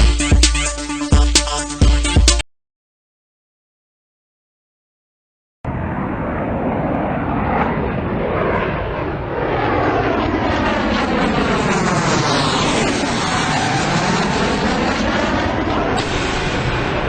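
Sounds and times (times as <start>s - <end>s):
jet engine roar: 5.7s - 17.0s.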